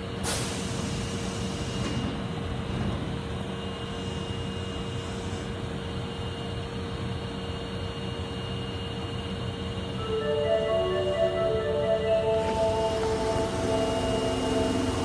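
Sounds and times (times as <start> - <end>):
subway car hiss: 0.2 - 2.4, 3.6 - 5.7, 9.9 - 15.0.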